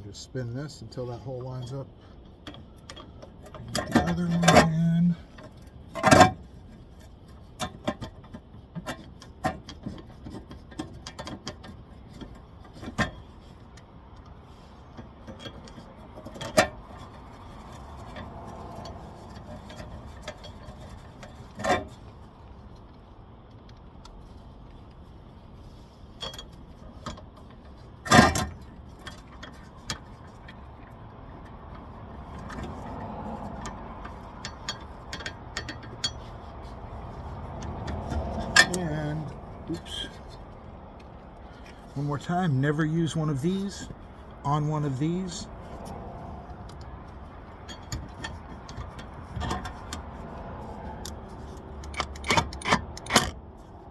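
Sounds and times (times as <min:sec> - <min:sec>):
traffic passing: 0:11.8 - 0:53.9.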